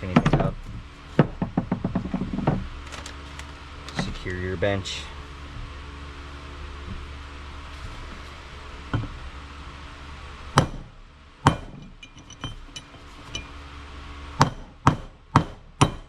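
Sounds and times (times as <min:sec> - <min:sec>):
hammer striking metal punch: 0:10.5 - 0:13.5, 0:14.4 - 0:16.0
light metal clinks: 0:11.8 - 0:13.6.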